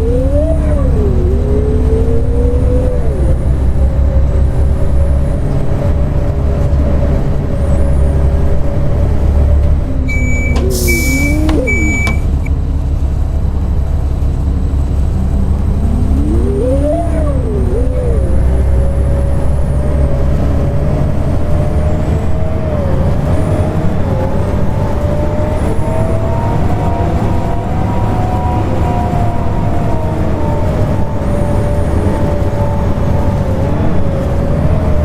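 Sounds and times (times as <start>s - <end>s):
bus engine rumbling: 0.0s - 35.0s
short beeps: 10.1s - 12.5s.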